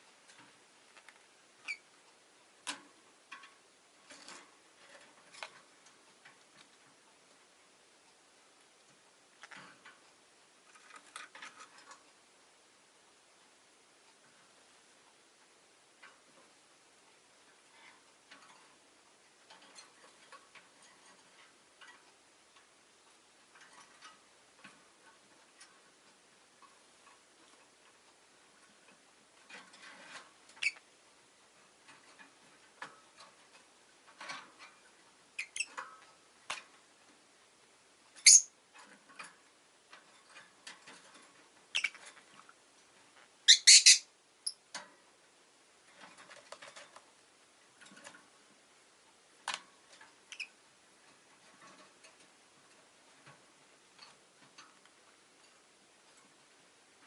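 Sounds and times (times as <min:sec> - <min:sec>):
quiet ticking and rustling: 0:00.0 - 0:57.0
lovebirds chirping: 0:38.2 - 0:38.6, 0:41.7 - 0:42.0, 0:43.5 - 0:44.6.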